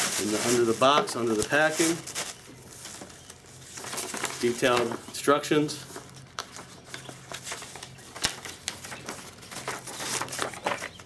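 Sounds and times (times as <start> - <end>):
paper packing rustling: 0.0 - 11.0.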